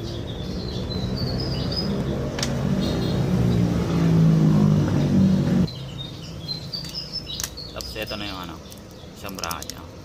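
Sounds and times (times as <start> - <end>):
birds chirping: 0.0 - 10.0.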